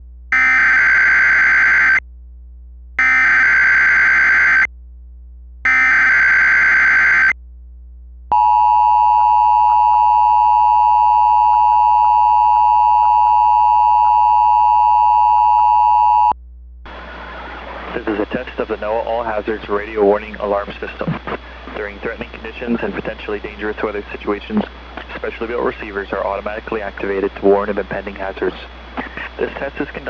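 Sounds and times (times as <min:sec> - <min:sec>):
steady warning alarm tone: 0:03.0 - 0:04.7, 0:05.7 - 0:07.3.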